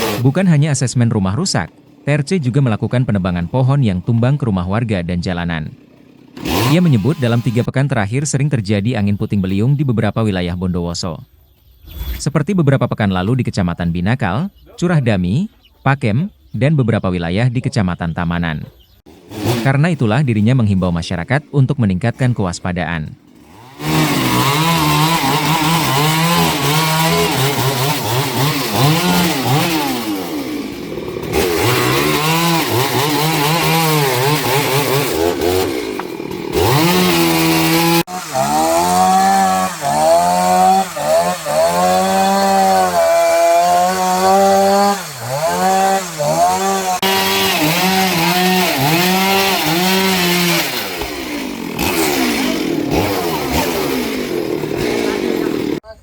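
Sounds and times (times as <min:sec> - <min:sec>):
chainsaw cutting wood: 0:00.0 - 0:07.7, 0:19.1 - 0:55.9.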